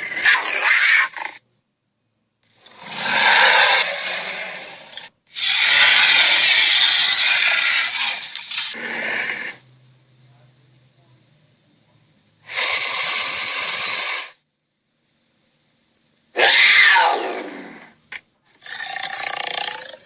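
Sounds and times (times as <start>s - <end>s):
tiger snarling: 2.6s - 9.6s, 16.4s - 20.0s.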